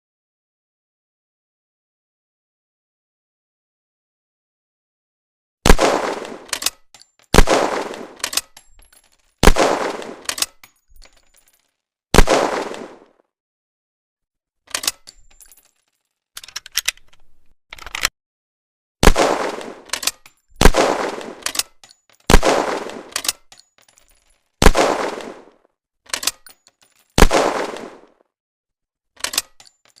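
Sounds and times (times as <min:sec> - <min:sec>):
gunshots with echo: 0:05.7 - 0:06.6, 0:07.3 - 0:08.3, 0:09.4 - 0:10.3, 0:12.2 - 0:13.2, 0:19.0 - 0:19.9, 0:20.6 - 0:21.6, 0:22.3 - 0:23.3, 0:24.6 - 0:25.6, 0:27.2 - 0:28.2
metallic gun action clicks: 0:06.1 - 0:11.8, 0:14.7 - 0:18.1, 0:19.4 - 0:24.5, 0:26.1 - 0:27.9, 0:29.2 - 0:30.0.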